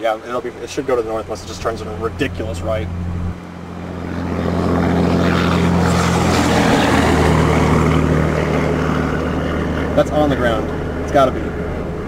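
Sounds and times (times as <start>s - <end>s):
road and wind noise: 0.0s - 12.0s
vehicle engine running: 0.0s - 12.0s.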